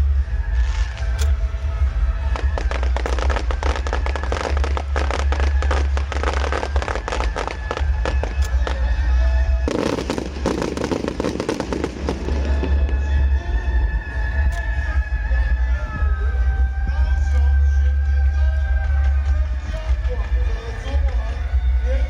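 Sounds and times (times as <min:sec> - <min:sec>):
loud music with heavy bass: 0:00.0 - 0:22.0
fireworks cracks and pops: 0:02.4 - 0:08.8, 0:09.7 - 0:12.9.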